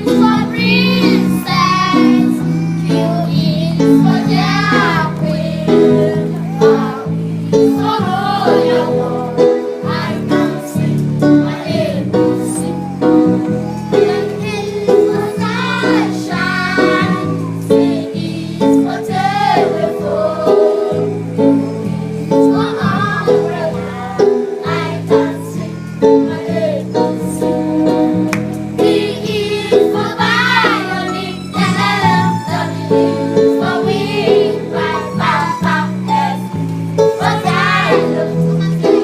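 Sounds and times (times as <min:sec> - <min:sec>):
voices singing: 0:00.0 - 0:27.8, 0:28.7 - 0:39.0.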